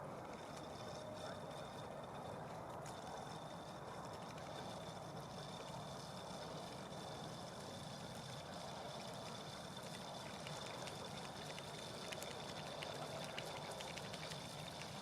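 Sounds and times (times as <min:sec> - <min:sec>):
faint ticks: 0:00.0 - 0:15.0.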